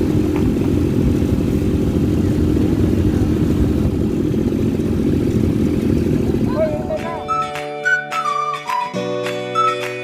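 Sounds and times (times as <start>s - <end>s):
atv engine running: 0.0s - 7.5s.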